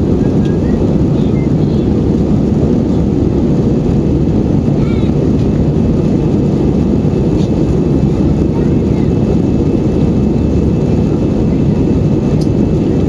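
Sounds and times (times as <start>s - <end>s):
airliner cabin engine rumble: 0.0s - 13.0s
faint voices: 4.6s - 5.3s, 8.2s - 9.7s.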